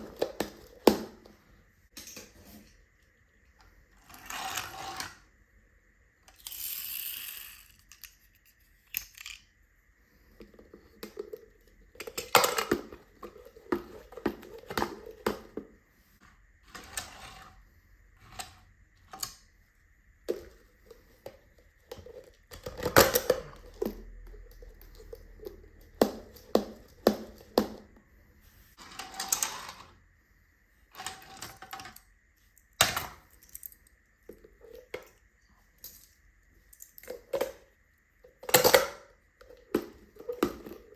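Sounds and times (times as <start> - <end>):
toy cars scraping: 3.9 - 5.3, 6.3 - 9.2, 16.2 - 19.4, 28.7 - 30.0
toy cars clattering: 6.3 - 9.6, 16.6 - 17.6, 28.8 - 30.0.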